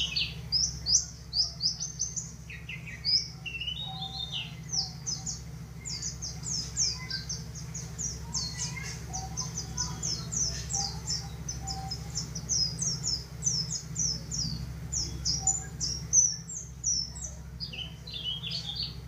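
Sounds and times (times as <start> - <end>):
bird song of high notes: 0.0 - 19.0.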